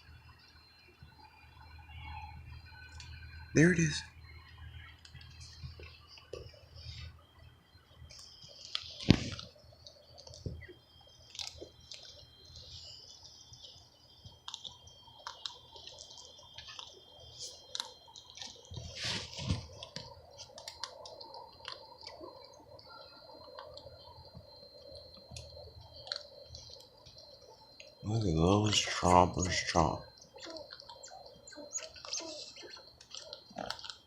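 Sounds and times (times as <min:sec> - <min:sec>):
squirrel gnawing a nut shell: 0:08.1 - 0:34.0.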